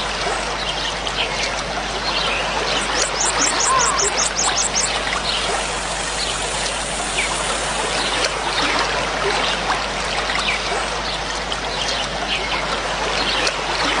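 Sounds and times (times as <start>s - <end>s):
running water trickling: 0.0s - 14.0s
bird chirps: 2.8s - 5.5s.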